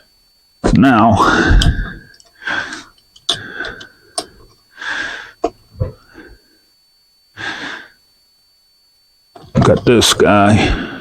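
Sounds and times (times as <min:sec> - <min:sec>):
man breathing heavily: 0:01.2 - 0:06.6, 0:07.4 - 0:08.0, 0:10.6 - 0:11.0
clicks of parts being handled: 0:01.6 - 0:04.6.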